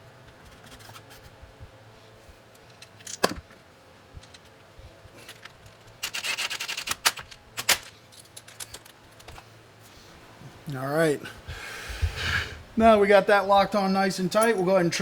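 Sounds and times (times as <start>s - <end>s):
fast run of ratchet clicks: 6.0s - 7.8s
metal clinks of tools on bolts: 14.3s - 14.8s.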